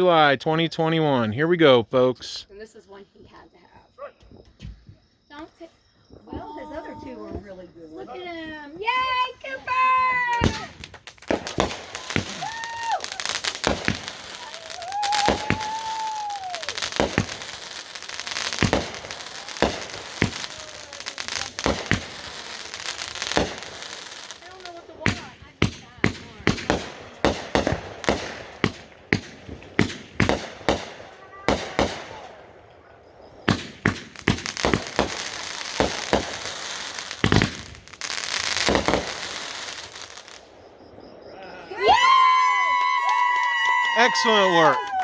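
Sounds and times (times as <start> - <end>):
firework crackling: 8.1 - 45.0
firework sharp bangs: 8.9 - 44.9
firework whistle falling pitch: 11.9 - 17.5, 41.4 - 45.0.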